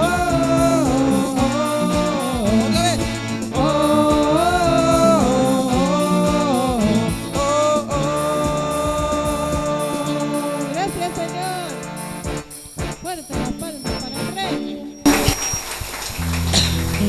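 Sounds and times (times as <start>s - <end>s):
person singing long notes: 0.0s - 11.4s
worship band music: 0.0s - 17.0s.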